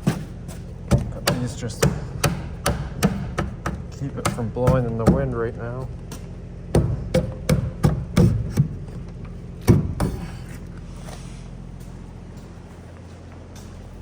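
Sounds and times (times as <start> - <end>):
sharp knocks and clanks: 0.0 - 10.6
steady low hum: 0.0 - 14.0.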